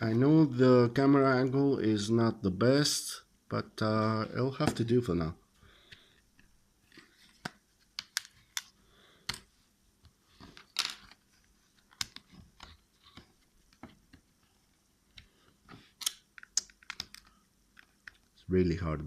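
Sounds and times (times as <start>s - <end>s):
plastic clicks and snaps: 16.0s - 18.3s.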